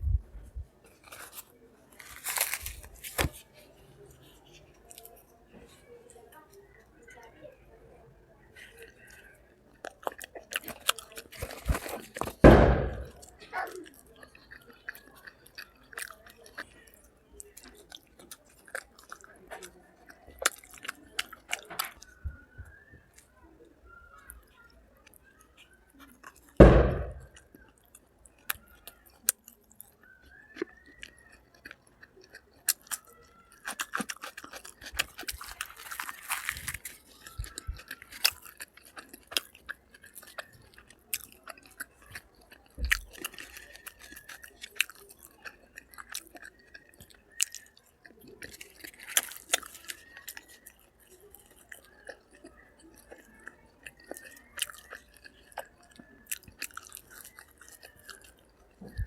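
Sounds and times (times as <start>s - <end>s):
chewing and crunching food: 0.0s - 59.0s
loud thump: 12.4s - 13.2s, 26.6s - 27.3s.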